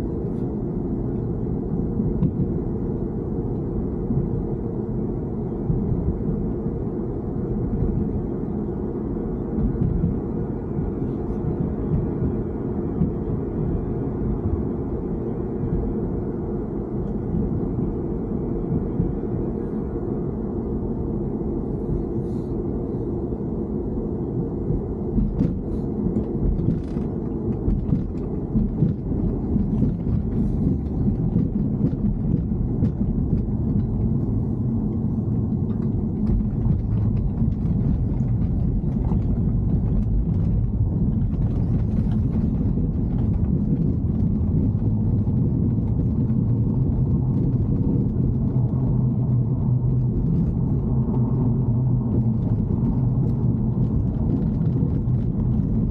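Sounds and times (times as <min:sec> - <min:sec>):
car low rumble: 0:00.0 - 0:55.9
low hum: 0:00.0 - 0:55.9.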